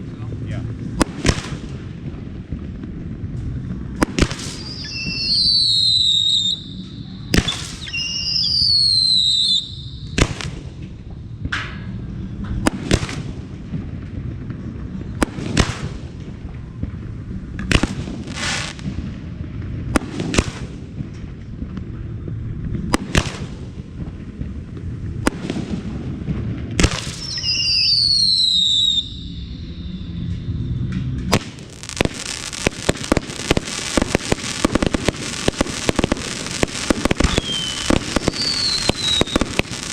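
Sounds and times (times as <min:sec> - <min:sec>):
firework falling whistle: 0:04.2 - 0:10.5, 0:26.8 - 0:39.9
low rumble: 0:29.0 - 0:39.9
firework shells bursting: 0:30.9 - 0:39.9.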